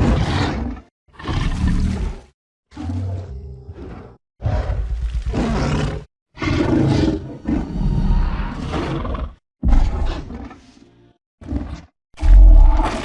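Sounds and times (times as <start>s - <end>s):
monster roaring and growling: 12.2s - 13.0s.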